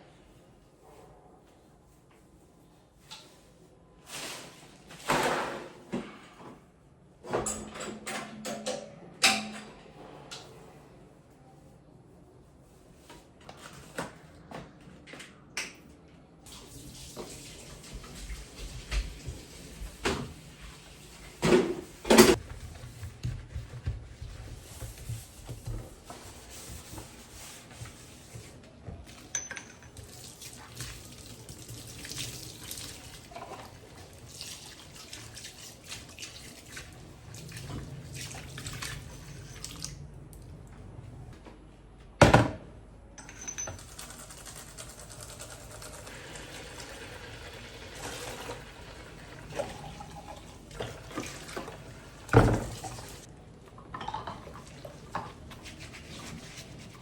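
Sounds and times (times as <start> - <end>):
dishes clinking: 29.2 - 30.0.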